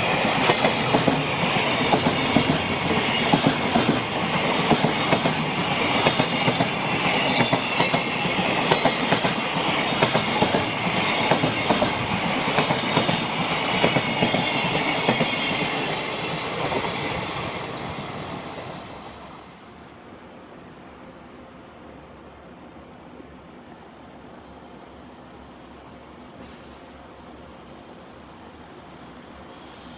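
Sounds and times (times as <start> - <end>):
freight train wheels clickety-clack: 0.0 - 19.5, 26.4 - 26.9.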